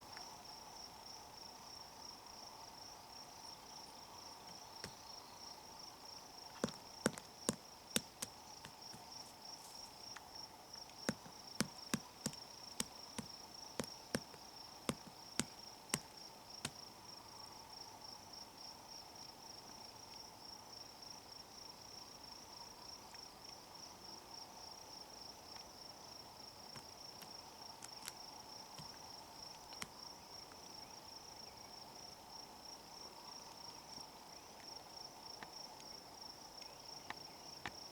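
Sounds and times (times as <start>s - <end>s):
insects chirring: 2.0s - 17.9s, 25.8s - 31.8s
woodpecker pecking wood: 6.6s - 10.0s, 11.1s - 16.8s.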